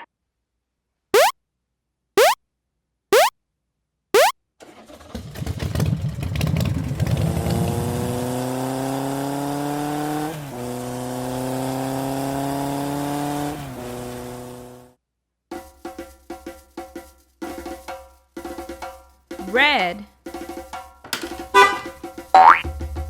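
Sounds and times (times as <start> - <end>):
vehicle engine accelerating: 4.9 - 14.9, 22.6 - 23.0.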